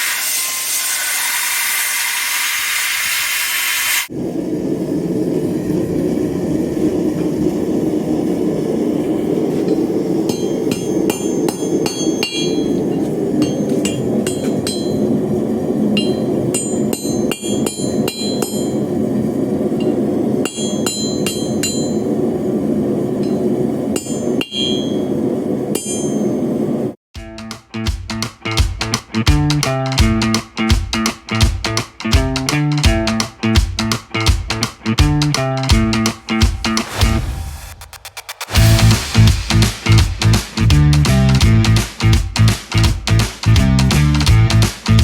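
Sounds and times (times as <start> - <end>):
hammer striking steel on anvil: 10.3 - 15.0, 16.0 - 18.8, 19.8 - 22.0, 24.0 - 25.0, 25.7 - 26.4
steady low roar: 38.6 - 41.8.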